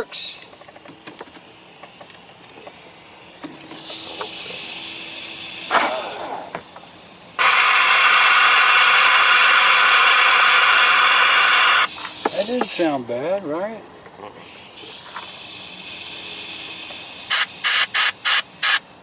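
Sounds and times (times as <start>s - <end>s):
pressurized spray hissing: 2.8s - 12.9s, 14.4s - 19.0s
loud hiss with thin whistle: 2.9s - 13.0s, 14.4s - 19.0s.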